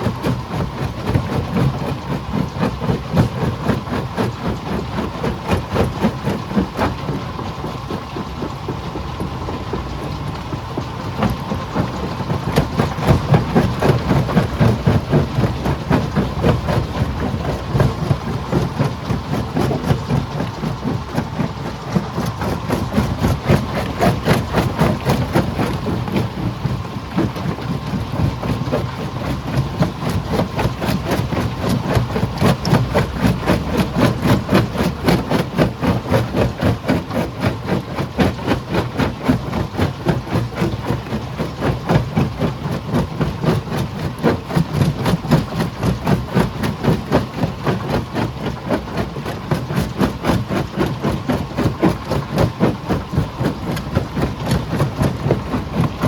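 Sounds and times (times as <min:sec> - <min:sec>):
low engine rumble: 0:00.0 - 0:56.0
stone crusher pounding: 0:11.2 - 0:56.0.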